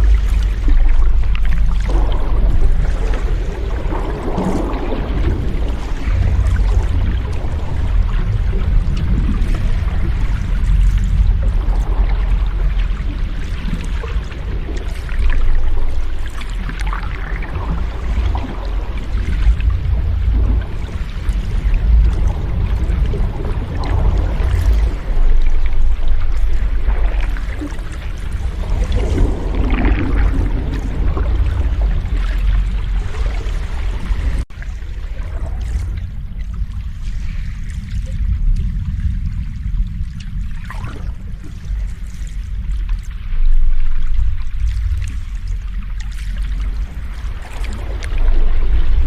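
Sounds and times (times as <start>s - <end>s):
breaking wave splash: 0.0s - 36.0s
surf rumbling on shore: 0.0s - 45.9s.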